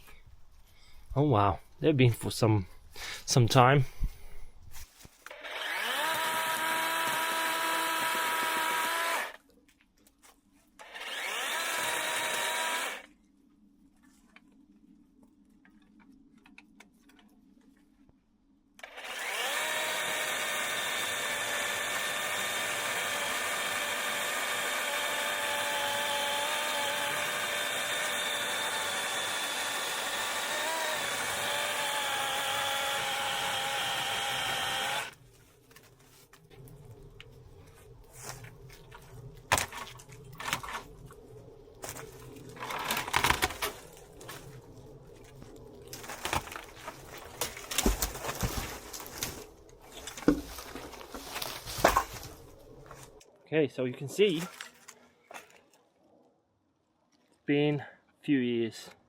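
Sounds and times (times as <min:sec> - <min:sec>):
power tool motor whining: 0:05.3 - 0:09.4, 0:10.8 - 0:13.1, 0:18.8 - 0:35.2.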